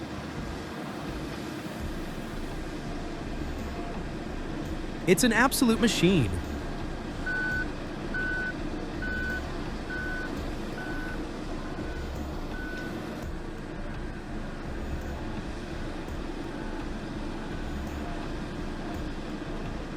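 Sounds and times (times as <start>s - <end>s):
diesel engine rumble: 1.8s - 19.9s
reversing alarm beeping: 7.2s - 13.3s.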